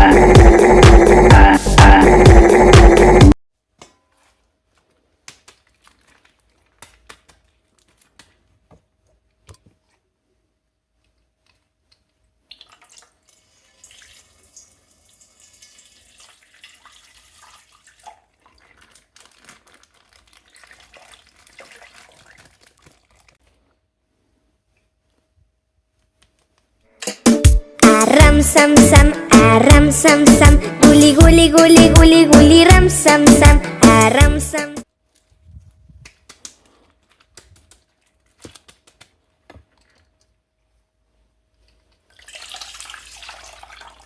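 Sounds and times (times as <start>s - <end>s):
plastic crinkling: 4.0s - 9.4s, 18.6s - 23.9s, 35.0s - 40.6s
faint splashing and trickling water: 4.5s - 9.8s, 10.9s - 23.8s, 41.5s - 44.0s.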